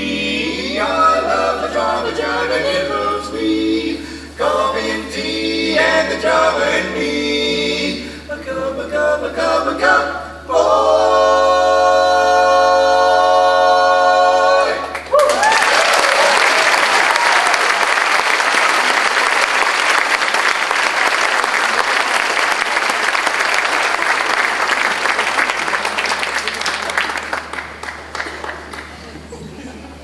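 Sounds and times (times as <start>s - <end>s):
male chorus singing a cappella: 0.0s - 15.0s
audience applause: 14.8s - 29.3s
audience shouts: 15.1s - 17.9s.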